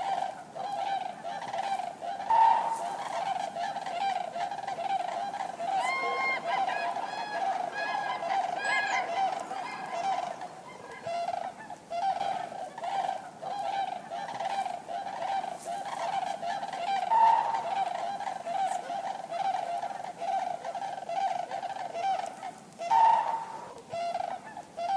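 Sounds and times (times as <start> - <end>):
cranes trumpeting: 0.0 - 22.3, 22.9 - 24.5
louder higher crane call: 2.2 - 13.0, 16.0 - 19.7, 22.9 - 24.2.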